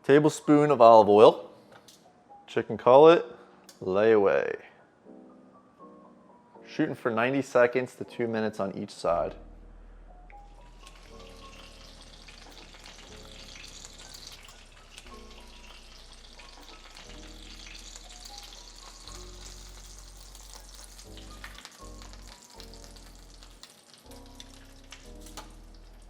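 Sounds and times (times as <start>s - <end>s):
chicken sizzling in oil: 10.4s - 26.0s.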